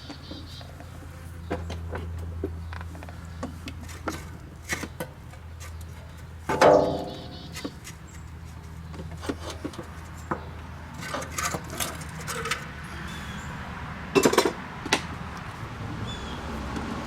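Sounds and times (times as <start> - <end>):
metal parts clinking and knocking: 6.5 - 7.9, 11.0 - 12.7.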